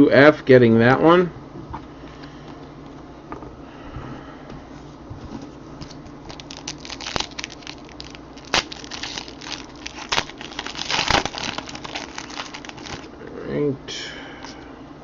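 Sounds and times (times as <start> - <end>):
card wrappers crinkling: 5.8 - 13.1.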